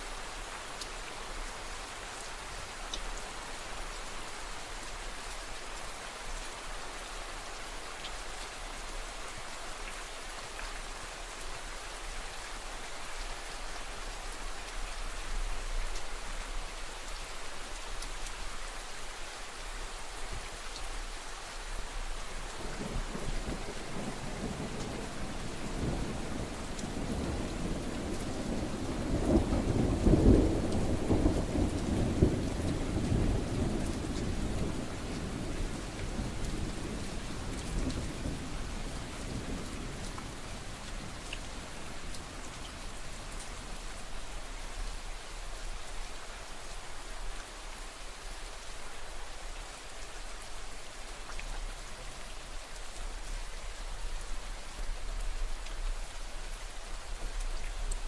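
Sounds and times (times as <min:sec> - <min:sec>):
steady rain: 0:00.0 - 0:58.0
low roll of thunder: 0:22.6 - 0:42.6.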